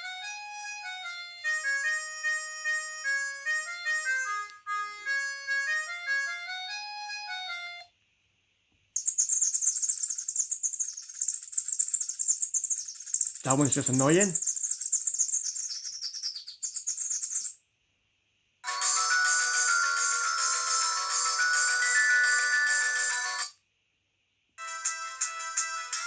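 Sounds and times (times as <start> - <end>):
ringtone tune of clear notes: 0.0 - 7.9, 18.6 - 23.6, 24.6 - 26.0
shrill chirping ringtone: 0.0 - 7.9, 9.0 - 17.6, 18.6 - 23.6, 24.6 - 26.0.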